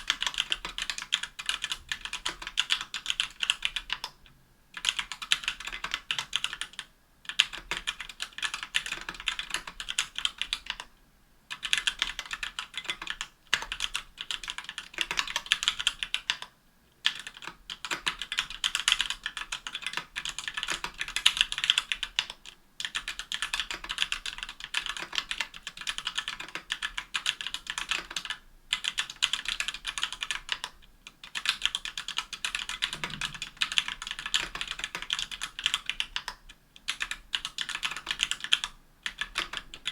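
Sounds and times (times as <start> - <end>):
mechanical keyboard typing: 0.0 - 4.2, 4.8 - 10.9, 11.5 - 39.9.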